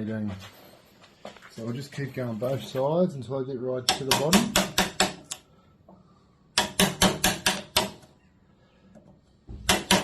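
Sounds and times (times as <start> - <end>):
chisel being struck: 3.9 - 5.4, 6.6 - 8.0, 9.6 - 10.0.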